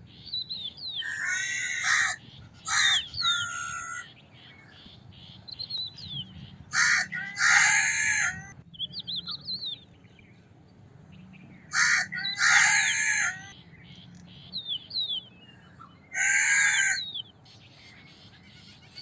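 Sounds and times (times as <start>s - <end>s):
small birds chirping: 0.0s - 19.0s
crow cawing: 1.0s - 4.1s, 6.7s - 8.4s, 11.7s - 13.5s, 16.2s - 17.1s.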